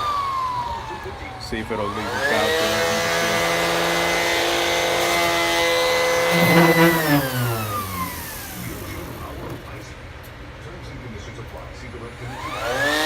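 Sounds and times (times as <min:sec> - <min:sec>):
orbital sander whining: 0:01.6 - 0:09.8, 0:12.3 - 0:13.0
sander grabbing wood: 0:06.0 - 0:09.8.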